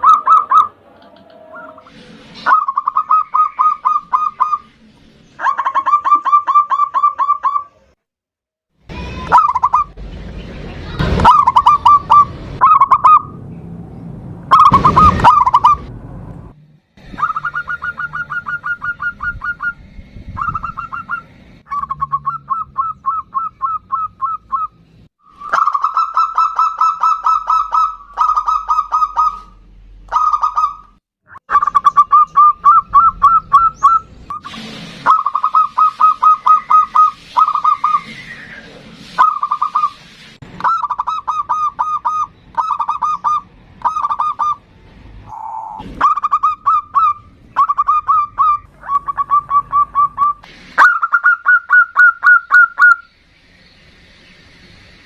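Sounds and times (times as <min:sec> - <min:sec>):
dove cooing in trilled phrases: 0:17.2 - 0:19.7.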